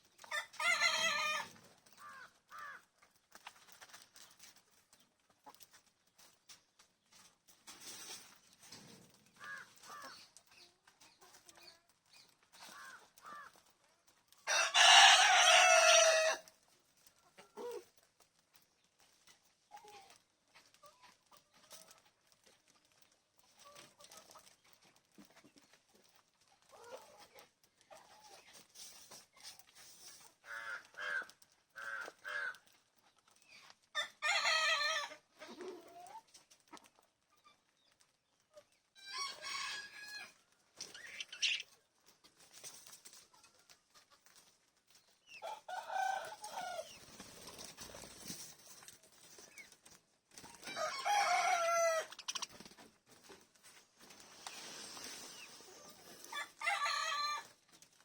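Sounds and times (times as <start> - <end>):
birds drawn-out calls: 40.8 - 41.8, 51.9 - 52.7.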